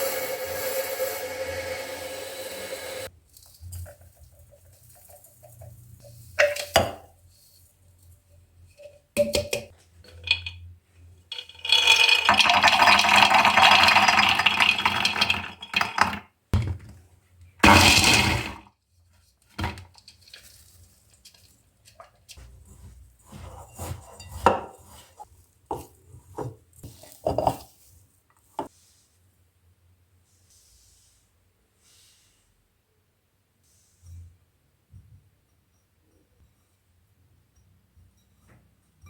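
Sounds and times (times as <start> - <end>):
dishes and utensils clinking: 3.6 - 7.1, 8.7 - 10.7, 23.3 - 25.9, 26.8 - 27.7.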